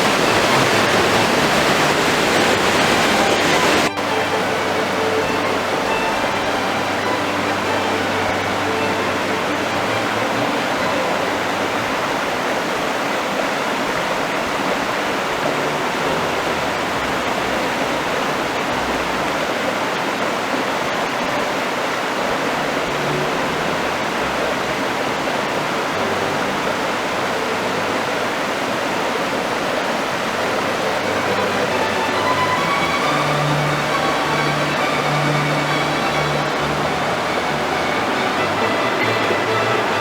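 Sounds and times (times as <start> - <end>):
waterfall rushing: 0.0 - 40.0.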